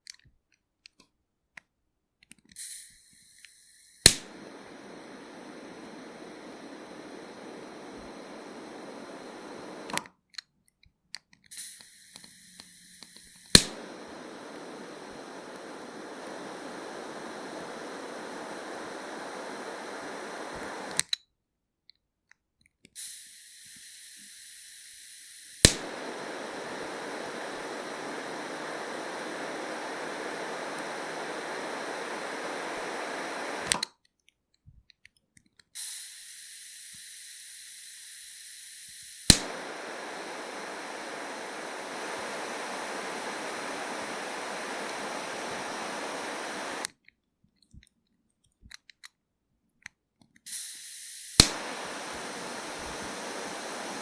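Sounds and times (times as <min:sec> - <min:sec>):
lighter flame hissing: 0:02.6 - 0:10.1, 0:11.5 - 0:21.1, 0:23.0 - 0:33.9, 0:35.8 - 0:46.9, 0:50.5 - 0:54.0
lighter strike click: 0:03.4 - 0:10.1, 0:11.6 - 0:21.1, 0:23.4 - 0:33.9, 0:35.8 - 0:46.9, 0:50.5 - 0:54.0
steady rushing noise: 0:51.4 - 0:54.0.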